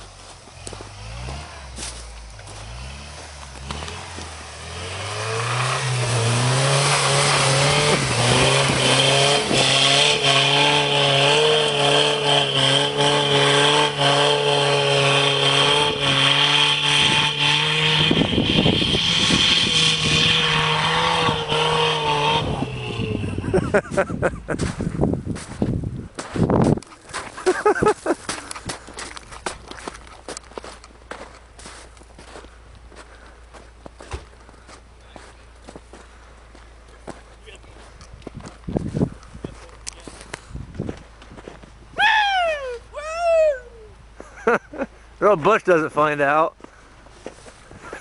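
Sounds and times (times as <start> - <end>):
car engine revving: 0.0 - 24.3.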